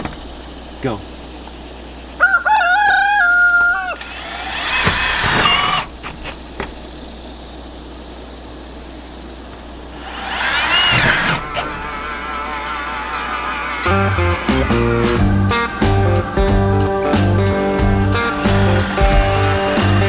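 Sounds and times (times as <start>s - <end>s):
rooster crowing: 2.2s - 5.8s, 10.0s - 20.0s.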